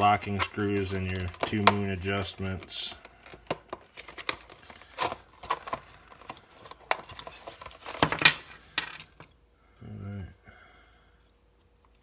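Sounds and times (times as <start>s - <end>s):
plastic packaging crinkling: 0.0s - 9.3s.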